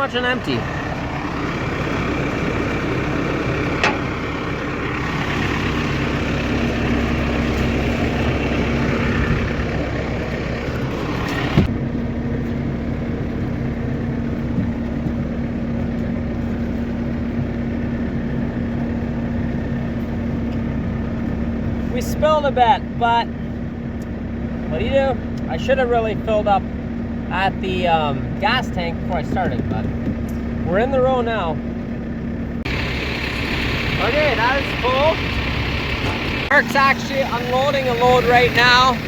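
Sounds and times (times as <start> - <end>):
tractor engine idling: 0.0 - 39.0.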